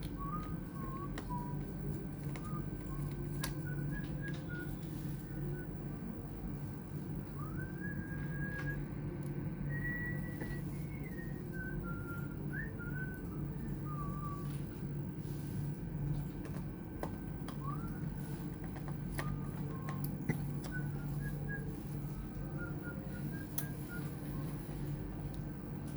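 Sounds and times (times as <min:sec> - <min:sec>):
person whistling a slow tune: 0:00.0 - 0:01.8, 0:02.4 - 0:05.7, 0:07.2 - 0:09.0, 0:09.6 - 0:14.8, 0:17.5 - 0:18.5, 0:19.1 - 0:24.7
steady low hum: 0:00.0 - 0:25.9.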